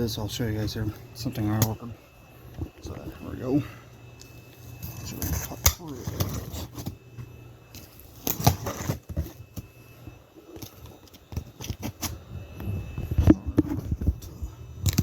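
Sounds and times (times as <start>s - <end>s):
cardboard scraping and rustling: 4.9s - 7.0s, 7.8s - 9.8s, 11.3s - 14.4s
blade cutting packing tape: 8.0s - 9.4s, 11.4s - 12.2s.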